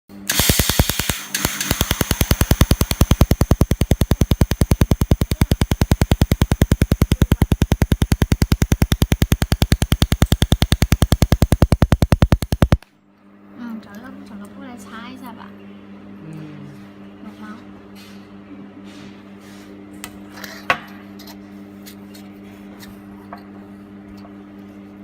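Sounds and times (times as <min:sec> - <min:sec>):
steady hum: 0:00.1 - 0:12.8
laser welder sharp cracks: 0:00.1 - 0:12.9.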